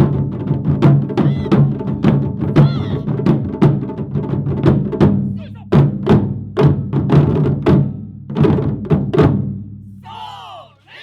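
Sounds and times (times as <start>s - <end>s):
taiko drums beating: 0.0s - 9.8s
person calling out: 1.2s - 1.6s, 2.6s - 3.1s, 5.4s - 5.8s, 10.0s - 11.0s.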